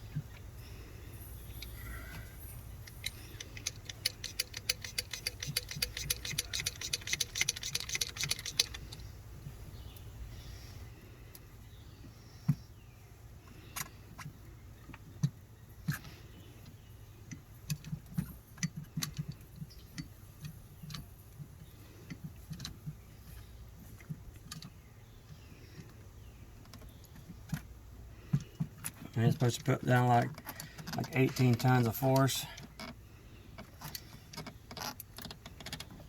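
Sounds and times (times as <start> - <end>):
metal clicks and knocks: 2.8 - 9.1.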